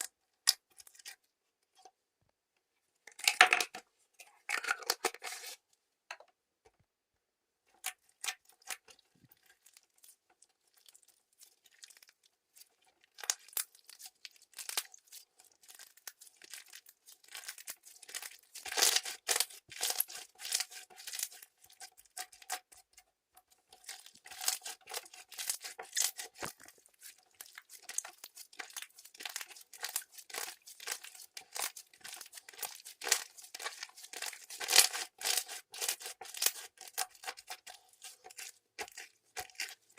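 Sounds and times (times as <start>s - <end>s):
slime crackling and popping: 13.1s - 22.6s, 23.8s - 39.8s.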